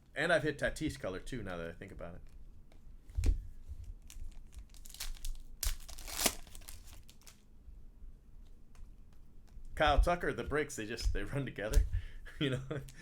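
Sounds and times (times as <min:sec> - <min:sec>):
card packaging crinkling and tearing: 0:04.0 - 0:07.4.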